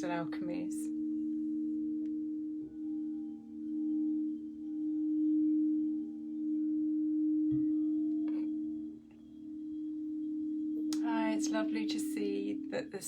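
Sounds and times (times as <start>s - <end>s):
crystal singing bowls ringing: 0.0s - 13.0s.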